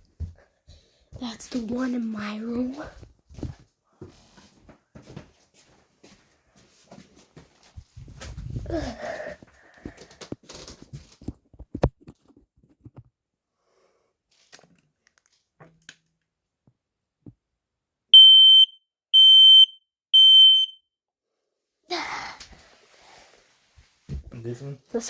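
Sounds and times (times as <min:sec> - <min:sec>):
smoke alarm beeps: 0:18.2 - 0:20.8.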